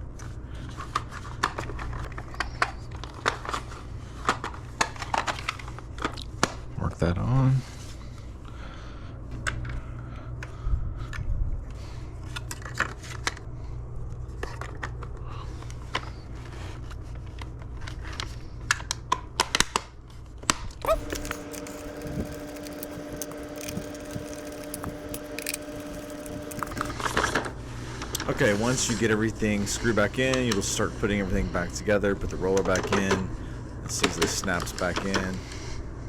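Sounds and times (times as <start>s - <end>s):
faint steady hum: 0.0s - 19.3s, 20.0s - 36.0s
plastic parts clicking and scraping: 21.0s - 28.8s.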